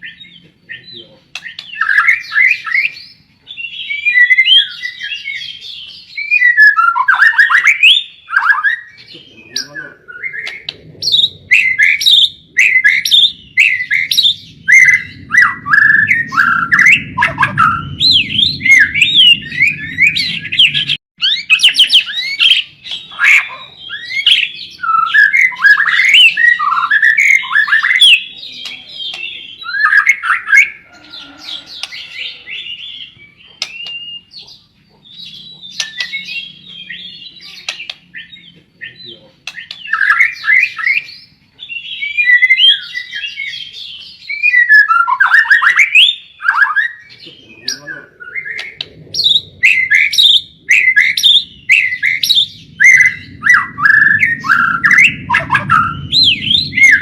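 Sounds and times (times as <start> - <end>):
songbird singing: 0.0 - 57.0
low rumble: 10.0 - 21.0, 48.1 - 57.0.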